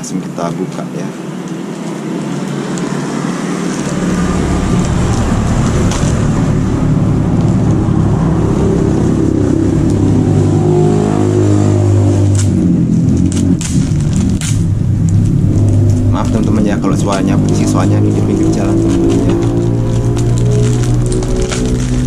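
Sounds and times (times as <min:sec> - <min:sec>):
vehicle engine running loudly: 0:01.2 - 0:22.0
package rustling clicks: 0:13.1 - 0:22.0.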